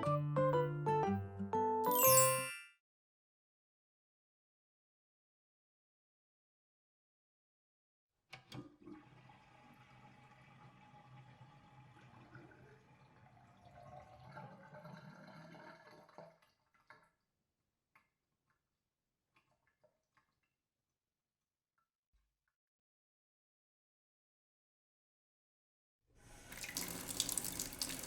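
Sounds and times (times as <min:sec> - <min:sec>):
water pouring: 0:08.8 - 0:17.1, 0:26.3 - 0:28.0
water dripping: 0:26.4 - 0:28.0.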